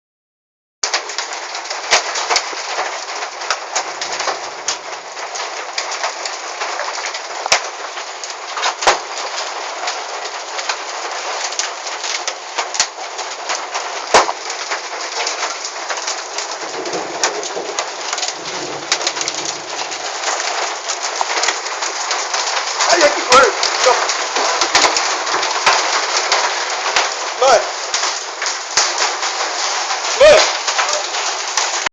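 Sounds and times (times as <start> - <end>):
hailstones cracking on hard surfaces: 0.8 - 31.9
rain and hail hiss: 0.8 - 31.9.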